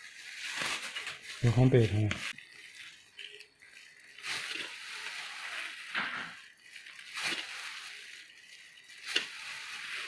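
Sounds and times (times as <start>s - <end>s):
food sizzling: 0.0s - 10.0s
spatula scraping wok: 2.2s - 10.0s.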